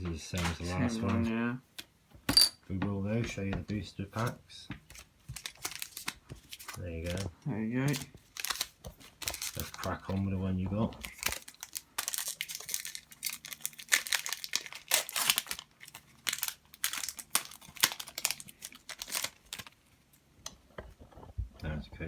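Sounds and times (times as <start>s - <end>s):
foil wrapper tearing and crinkling: 4.9s - 10.2s, 10.9s - 19.8s.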